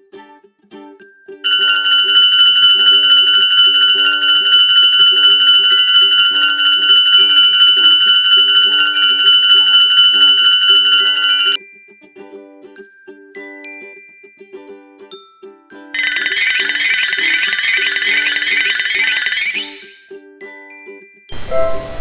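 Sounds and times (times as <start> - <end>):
high-pitched electronic alarm ringing: 1.5 - 11.6, 16.0 - 20.0.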